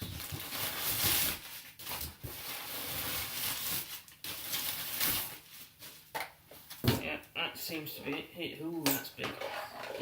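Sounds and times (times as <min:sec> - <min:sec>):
paper and cardboard rustling: 0:00.0 - 0:06.9.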